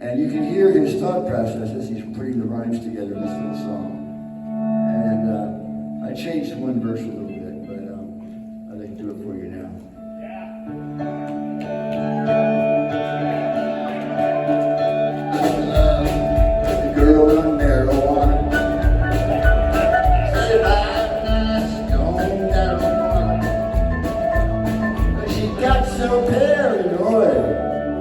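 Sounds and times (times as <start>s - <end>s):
electric guitar: 0.0s - 28.0s
rock band playing: 10.8s - 28.0s
drums and bass beat: 15.4s - 26.6s.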